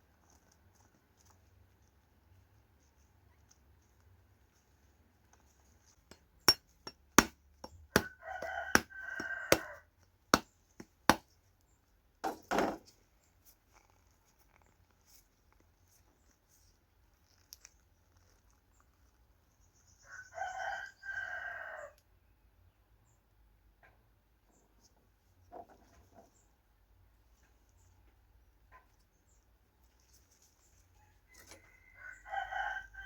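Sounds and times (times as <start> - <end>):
rooster crowing: 8.0 - 9.8, 20.0 - 22.0, 31.2 - 33.0.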